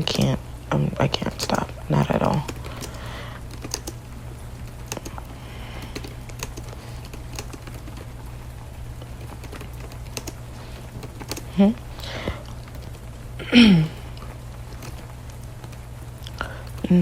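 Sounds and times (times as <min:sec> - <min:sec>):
steady low hum: 0:00.0 - 0:17.0
typing on computer keyboard: 0:02.2 - 0:04.0, 0:04.7 - 0:08.2, 0:09.0 - 0:11.6, 0:14.7 - 0:15.8.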